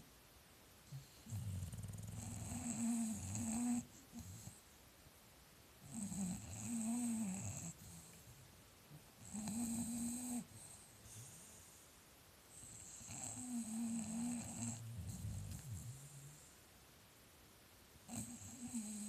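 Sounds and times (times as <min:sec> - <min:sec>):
dog snoring: 0:00.9 - 0:04.6, 0:05.8 - 0:08.3, 0:09.2 - 0:11.7, 0:12.6 - 0:16.6, 0:18.1 - 0:19.0.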